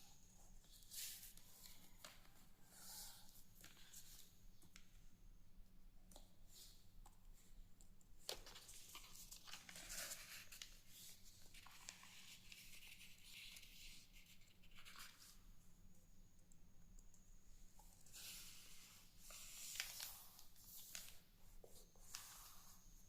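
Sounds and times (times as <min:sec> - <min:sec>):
paper rustling: 0:08.3 - 0:15.4, 0:19.3 - 0:22.6.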